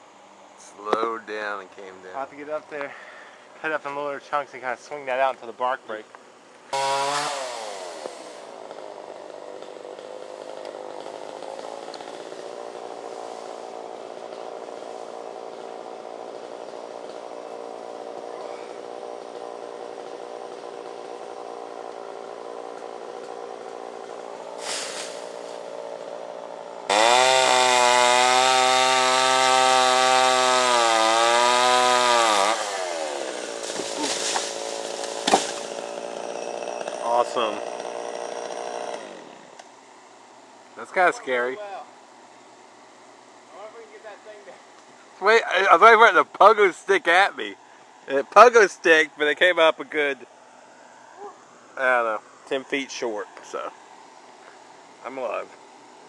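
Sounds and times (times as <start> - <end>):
chainsaw idling and revving: 6.7 - 39.8.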